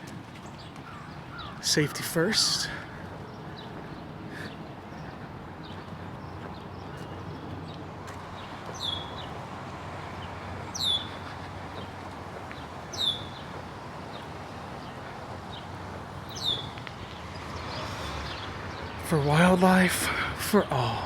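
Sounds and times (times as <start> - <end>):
steady background noise: 0.0 - 21.0.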